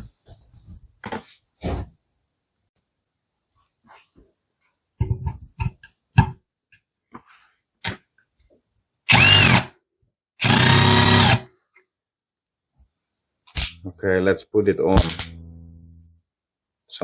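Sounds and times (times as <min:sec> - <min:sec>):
cordless drill driving screw: 0:09.1 - 0:09.7, 0:10.4 - 0:11.4.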